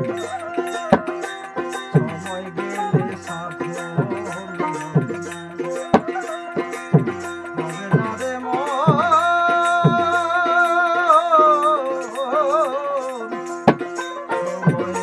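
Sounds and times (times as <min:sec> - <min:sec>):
wavering melody note: 0:00.0 - 0:09.6
drum beats: 0:00.0 - 0:15.0.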